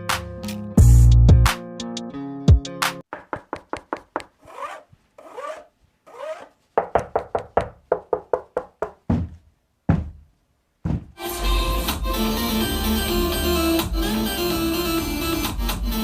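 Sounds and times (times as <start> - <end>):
deep thumps: 6.8 - 11.2.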